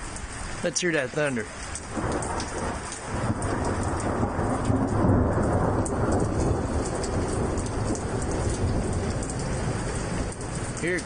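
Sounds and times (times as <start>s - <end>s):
heavy rain: 0.0s - 11.0s
raindrops ticking close by: 0.0s - 11.0s
thunder rumbling: 1.8s - 11.0s.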